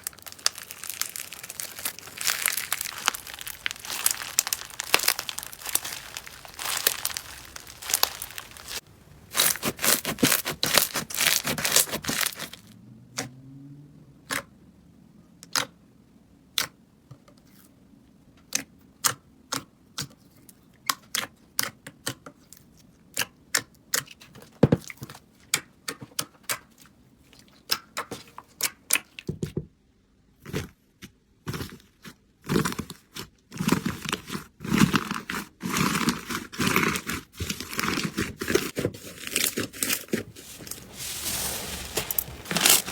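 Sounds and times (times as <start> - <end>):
slime crackling and popping: 0.0 - 12.7, 41.8 - 42.9.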